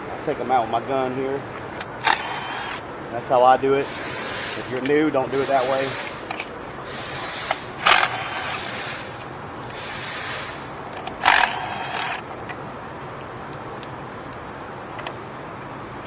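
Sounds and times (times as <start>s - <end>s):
impact gun running: 1.9s - 2.8s, 7.2s - 9.2s, 10.3s - 12.3s.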